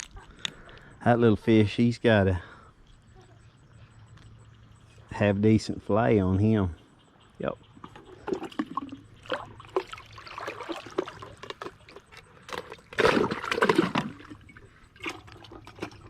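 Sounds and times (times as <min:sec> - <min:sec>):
water splashing and sloshing: 0:07.7 - 0:16.0.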